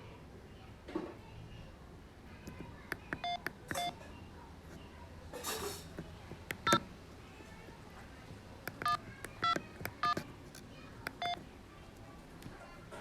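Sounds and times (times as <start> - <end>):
mobile phone electronic beeps: 3.2 - 4.0, 6.5 - 6.9, 8.7 - 10.2, 11.1 - 11.4
sharp clicks: 6.4 - 6.9, 8.6 - 11.4.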